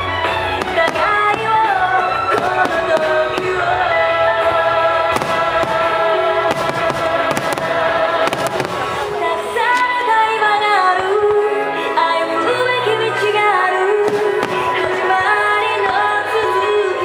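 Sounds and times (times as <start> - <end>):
fireworks cracking: 0.0 - 9.9, 14.0 - 16.1
music with long-held melody: 0.0 - 17.0.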